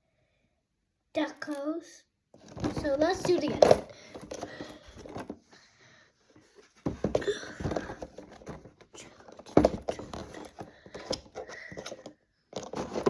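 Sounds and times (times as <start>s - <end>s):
small objects handled: 6.6s - 13.0s.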